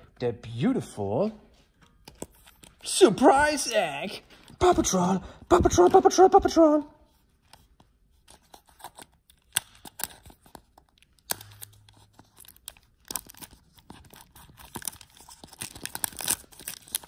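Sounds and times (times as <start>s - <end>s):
plastic wrapping crinkling and tearing: 8.4s - 17.0s.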